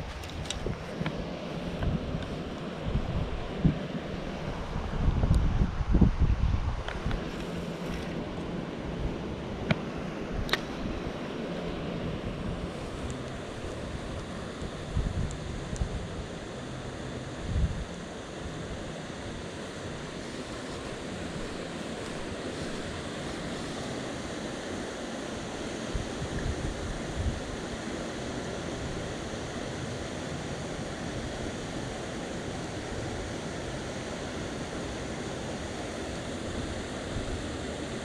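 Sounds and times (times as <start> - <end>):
wind buffeting microphone: 0.0 - 8.3, 12.0 - 16.4.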